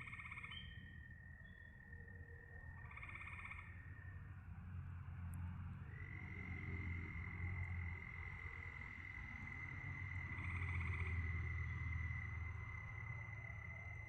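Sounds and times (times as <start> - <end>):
frogs croaking: 0.0 - 14.0
crickets trilling: 5.6 - 14.0.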